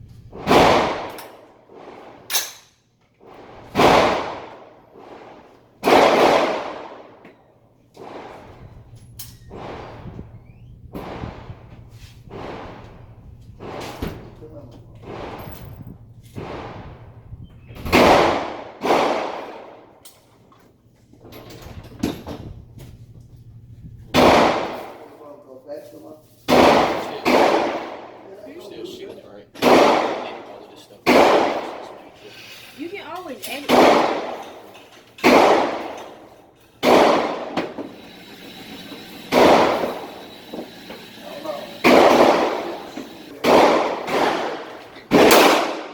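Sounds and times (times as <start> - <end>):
gunshots echoing: 0.4 - 2.6, 3.2 - 7.2, 8.0 - 8.6, 9.5 - 10.2, 12.3 - 14.2, 16.4 - 17.2, 17.9 - 19.9, 24.2 - 25.1, 26.5 - 28.8, 29.6 - 32.2, 33.6 - 37.9, 39.3 - 45.9
rifle shots: 0.4 - 2.6, 3.3 - 7.2, 8.0 - 8.6, 9.5 - 10.2, 16.4 - 17.2, 17.8 - 19.9, 24.1 - 25.1, 26.5 - 28.3, 29.6 - 32.2, 33.6 - 37.9, 39.2 - 40.6, 41.2 - 45.9.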